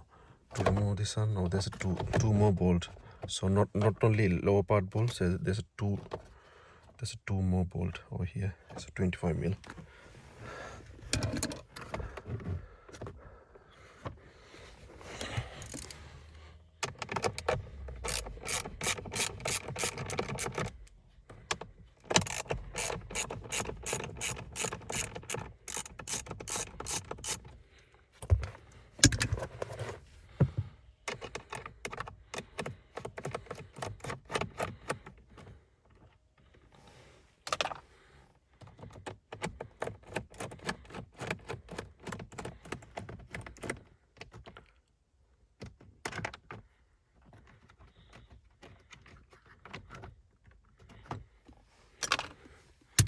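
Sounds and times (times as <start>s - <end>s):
hand ratchet clicking: 15.6s - 16.0s, 16.8s - 20.8s, 22.1s - 27.5s.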